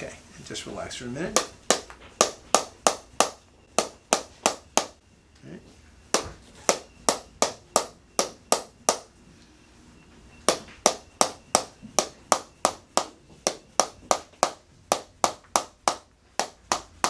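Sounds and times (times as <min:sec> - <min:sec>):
adjusting instrument tapping: 0:01.3 - 0:05.0, 0:06.2 - 0:09.1, 0:10.5 - 0:17.0.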